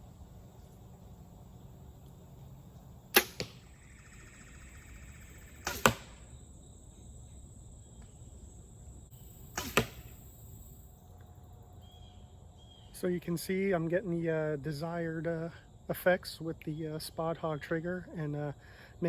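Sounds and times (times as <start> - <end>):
bow string snapping: 3.1 - 3.6, 5.6 - 6.2, 9.5 - 10.2
arrow striking target: 3.1 - 3.7, 5.6 - 6.3, 9.5 - 10.2.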